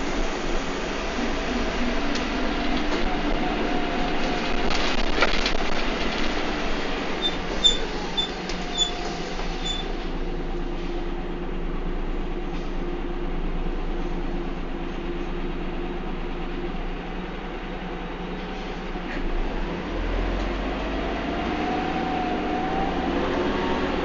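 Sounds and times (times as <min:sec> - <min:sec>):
bus body rattling: 0:00.0 - 0:11.4
bus engine droning: 0:00.0 - 0:24.0
short high-pitched squeaks: 0:07.2 - 0:09.0, 0:09.6 - 0:09.9.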